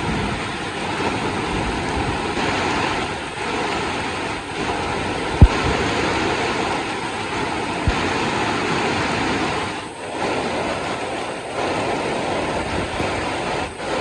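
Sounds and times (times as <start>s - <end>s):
heavy rain: 0.0s - 14.0s
short low thump: 5.4s - 5.7s.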